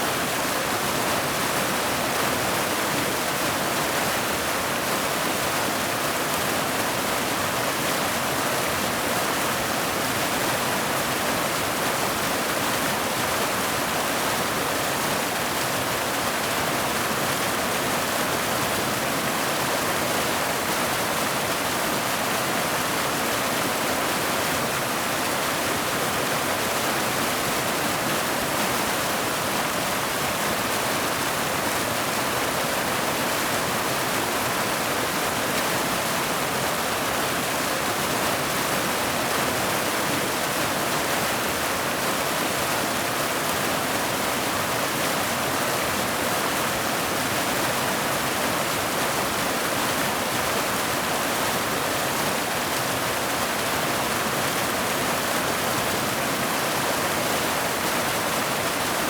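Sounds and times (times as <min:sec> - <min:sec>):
waterfall rushing over boulders: 0:00.0 - 0:59.0.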